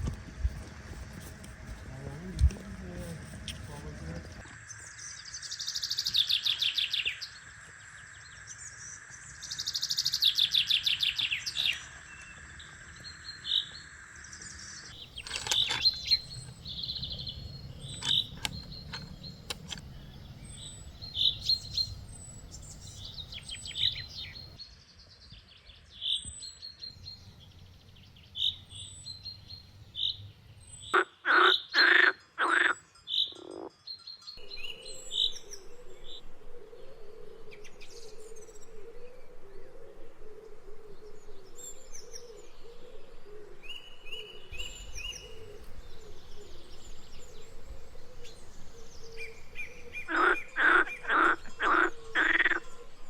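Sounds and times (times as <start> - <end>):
songbirds singing: 0.0 - 53.0
bird trills: 14.9 - 24.6, 41.6 - 53.0.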